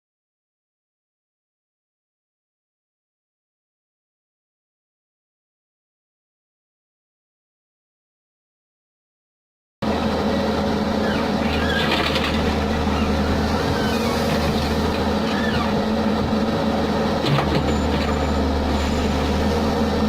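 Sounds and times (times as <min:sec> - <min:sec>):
diesel engine running: 0:09.8 - 0:20.0.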